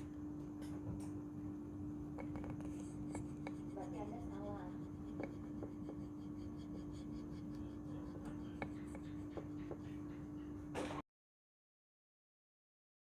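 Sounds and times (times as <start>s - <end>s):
steady low hum: 0.0s - 11.0s
knife scraping on whetstone: 2.2s - 10.0s.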